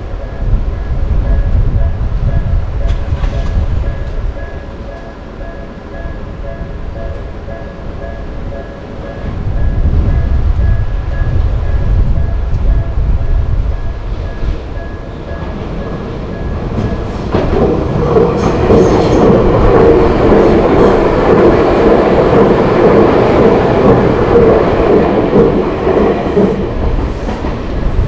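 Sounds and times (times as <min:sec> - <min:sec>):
faint repeating warning bell: 0:00.0 - 0:17.3
electric train clattering over rails: 0:00.0 - 0:28.0.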